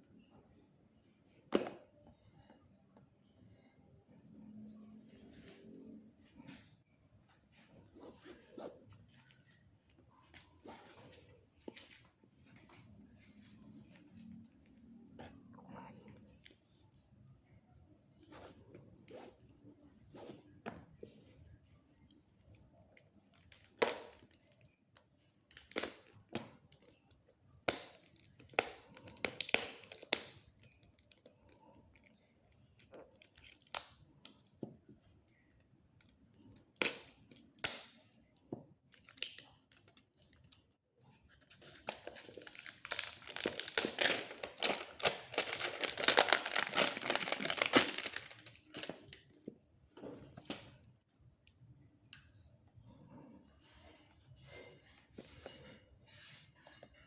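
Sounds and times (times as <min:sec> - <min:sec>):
packaging rustles and taps: 0:41.6 - 0:49.2
plastic wrap crinkling and tearing: 0:41.6 - 0:49.2.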